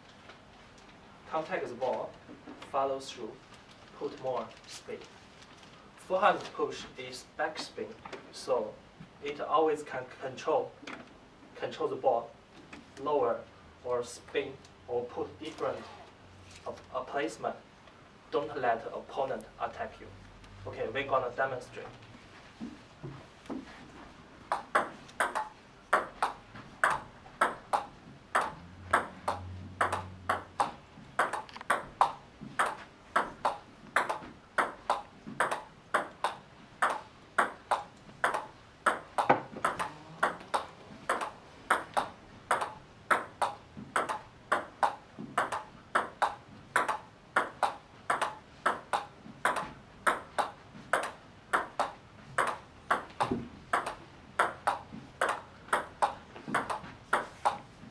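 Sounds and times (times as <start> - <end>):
table tennis ball hits: 24.5 - 57.7.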